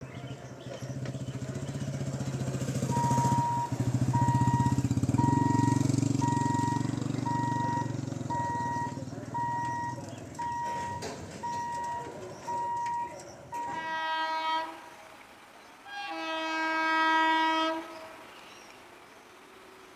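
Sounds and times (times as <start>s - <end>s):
small engine running: 0.5s - 10.3s
electronic warning beep: 2.9s - 13.8s.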